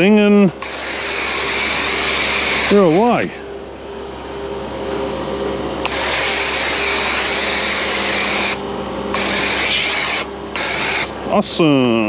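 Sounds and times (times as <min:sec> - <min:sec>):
pressure washer motor hum: 0:00.0 - 0:11.4
water jet hissing: 0:00.6 - 0:03.4, 0:05.8 - 0:11.2.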